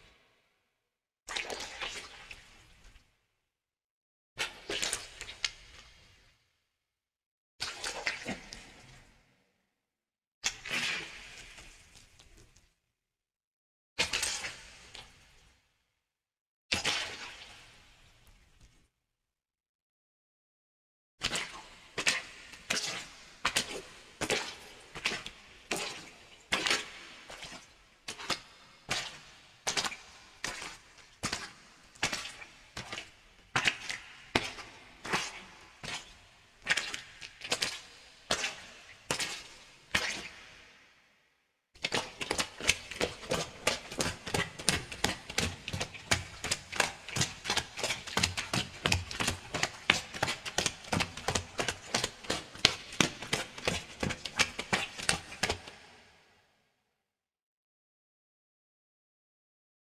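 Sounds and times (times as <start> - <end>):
footsteps in puddles: 41.8 - 55.9.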